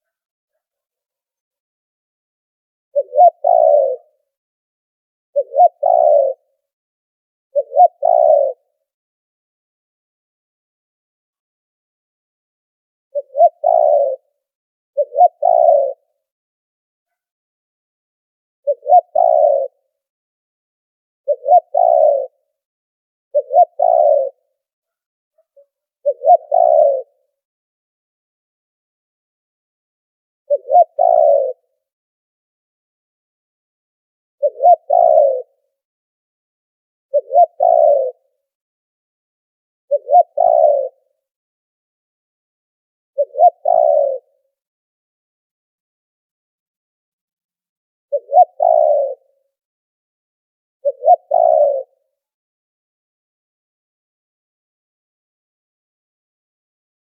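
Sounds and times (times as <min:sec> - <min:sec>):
dove cooing: 0:03.0 - 0:04.2, 0:05.4 - 0:06.5, 0:07.5 - 0:08.6, 0:13.1 - 0:14.3, 0:15.0 - 0:16.0, 0:18.6 - 0:19.8, 0:21.3 - 0:22.4, 0:23.3 - 0:24.5, 0:25.6 - 0:27.2, 0:30.5 - 0:31.7, 0:34.4 - 0:35.6, 0:37.1 - 0:38.3, 0:39.9 - 0:41.0, 0:43.2 - 0:44.4, 0:48.1 - 0:49.3, 0:50.8 - 0:52.0.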